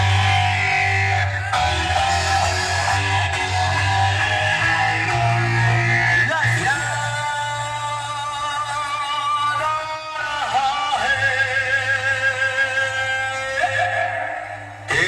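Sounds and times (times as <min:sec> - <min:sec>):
steady low bass note: 0:00.0 - 0:07.0
loud music with held notes: 0:00.0 - 0:12.4.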